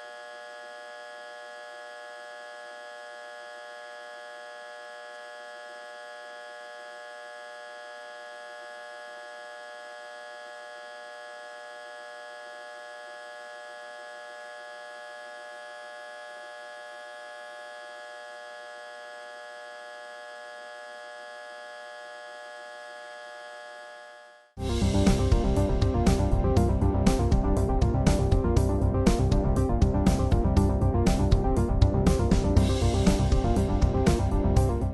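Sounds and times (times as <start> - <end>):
electrical transformer humming: 0.0 - 34.9.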